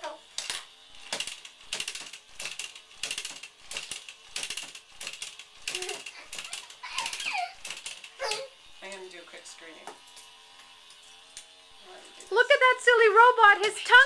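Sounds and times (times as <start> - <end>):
coin bank mechanism clicking: 0.4 - 8.2.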